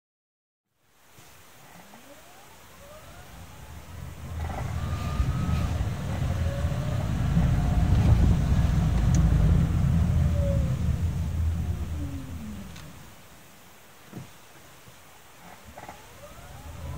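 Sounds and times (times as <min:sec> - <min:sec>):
car driving rumble: 0:01.7 - 0:13.4, 0:15.5 - 0:16.9
car creaking and squeaking: 0:01.9 - 0:13.0.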